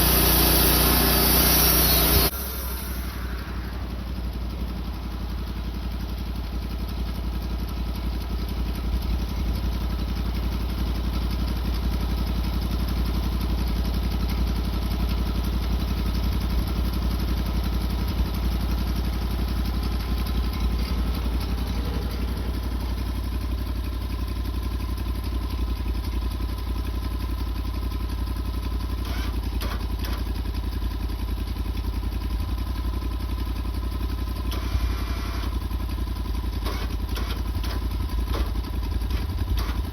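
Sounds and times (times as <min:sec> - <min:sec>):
saw blade cutting log: 0:00.0 - 0:03.7, 0:29.0 - 0:30.3, 0:34.5 - 0:35.5, 0:36.6 - 0:39.9
sawmill engine running: 0:00.0 - 0:25.7, 0:28.0 - 0:39.9.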